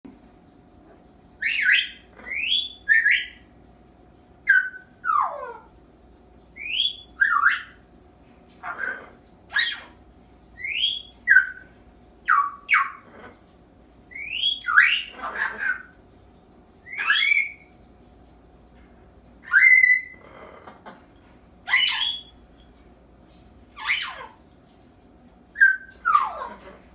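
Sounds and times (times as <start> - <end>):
parrot whistling and squeaking: 1.4 - 3.4, 4.5 - 5.5, 6.6 - 7.8, 8.6 - 10.0, 10.6 - 13.1, 14.1 - 15.9, 16.8 - 17.7, 19.4 - 20.3, 21.7 - 22.4, 23.8 - 24.4, 25.6 - 26.7.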